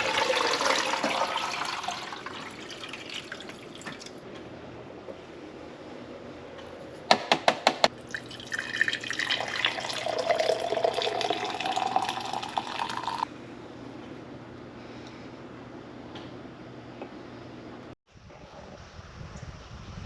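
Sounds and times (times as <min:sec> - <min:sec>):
liquid poured into vessel: 0:00.0 - 0:04.2, 0:07.9 - 0:13.3.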